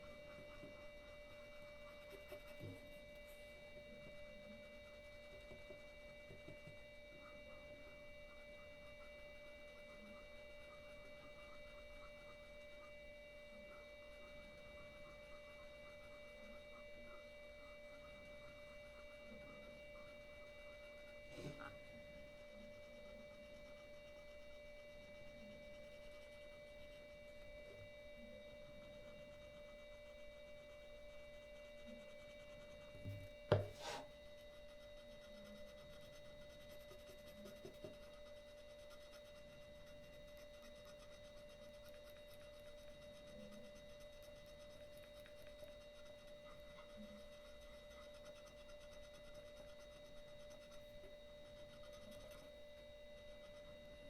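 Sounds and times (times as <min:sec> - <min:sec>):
faint high whine: 0:00.0 - 0:54.0
pad rubbing polish on lens: 0:28.3 - 0:52.6.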